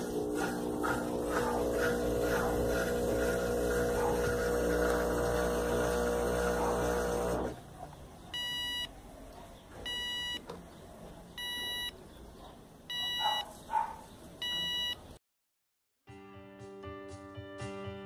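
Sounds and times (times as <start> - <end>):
electronic beeps: 8.4 - 8.9, 11.4 - 12.0, 14.4 - 15.0.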